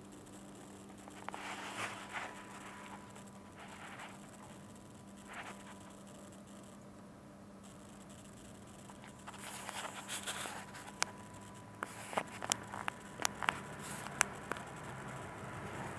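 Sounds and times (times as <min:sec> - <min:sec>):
low electrical hum: 0:00.0 - 0:15.9
rustling handling sounds: 0:00.7 - 0:05.9, 0:08.8 - 0:14.3.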